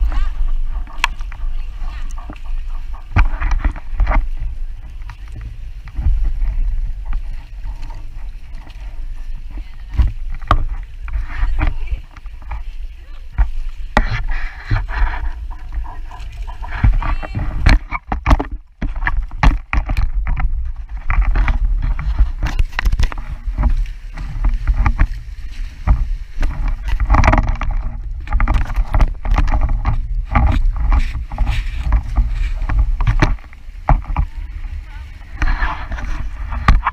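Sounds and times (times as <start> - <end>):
steady low rumble: 0.0 - 36.9
water slapping against hull: 0.0 - 36.9.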